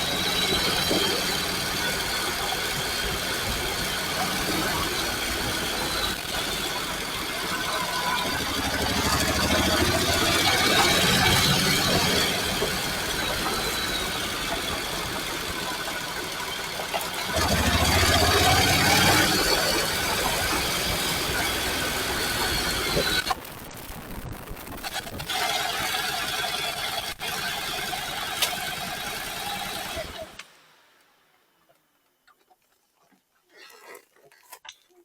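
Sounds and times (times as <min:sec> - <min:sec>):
road noise: 0:00.0 - 0:23.3
motorcycle engine running: 0:00.0 - 0:30.4.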